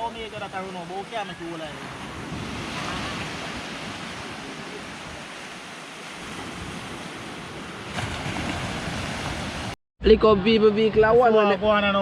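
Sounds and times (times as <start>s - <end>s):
sea surf washing on shore: 0.0s - 9.8s
wind on microphone: 1.9s - 9.7s.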